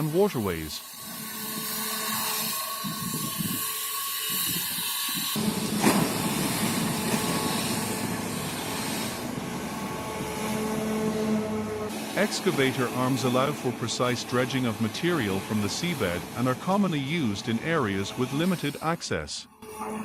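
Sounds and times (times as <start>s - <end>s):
heavy machinery humming: 5.4s - 20.0s.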